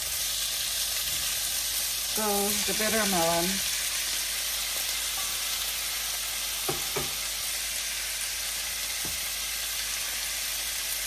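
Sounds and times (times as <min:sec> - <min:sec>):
vegetables sizzling in oil: 0:00.0 - 0:11.0
stirring knocks in pan: 0:06.7 - 0:07.3.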